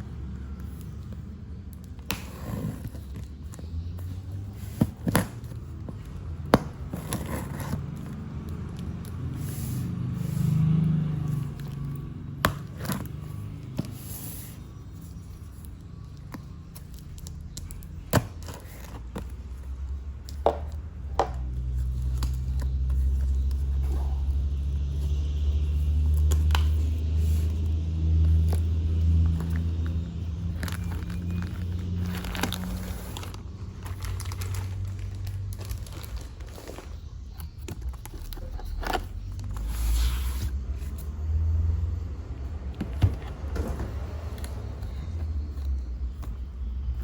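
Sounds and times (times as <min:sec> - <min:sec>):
hands handling packaging: 0:26.1 - 0:41.0.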